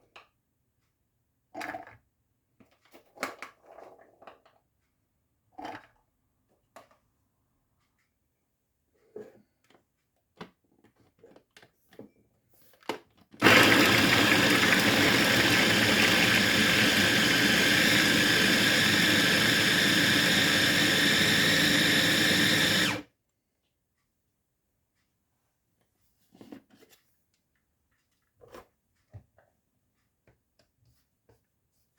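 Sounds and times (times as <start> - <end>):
electric kitchen grinder running: 13.4 - 23.0.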